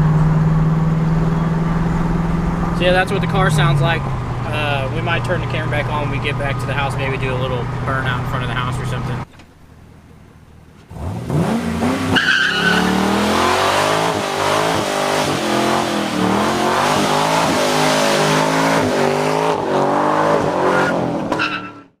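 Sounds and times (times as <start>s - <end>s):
car engine at high revs: 0.0s - 9.2s, 10.8s - 21.8s
tyres squealing in burnout: 11.8s - 21.9s.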